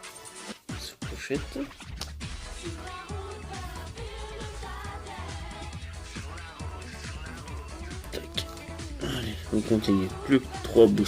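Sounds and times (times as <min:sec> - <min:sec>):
person singing: 0:02.6 - 0:11.0.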